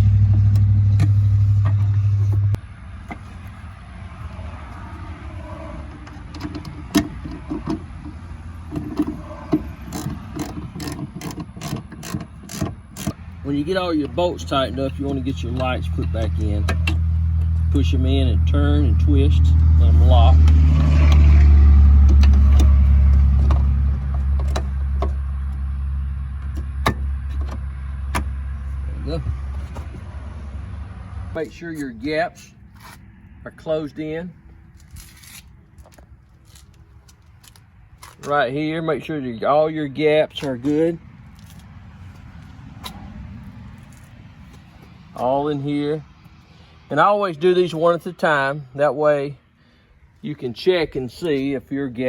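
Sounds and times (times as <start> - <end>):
ratchet wrench clicking: 9.9 - 13.2.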